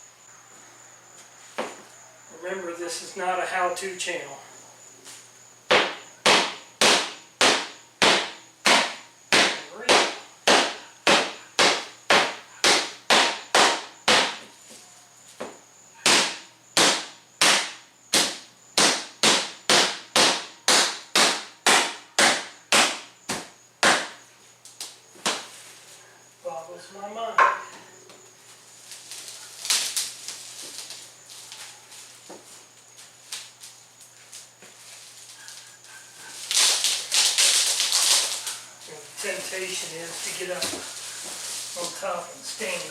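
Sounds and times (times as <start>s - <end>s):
blows striking taped windshield: 36.3s - 38.6s.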